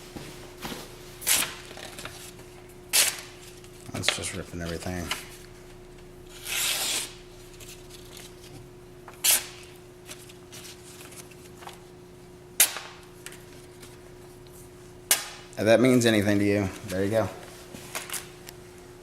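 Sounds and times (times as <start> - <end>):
knife ripping through paper: 6.3 - 8.2.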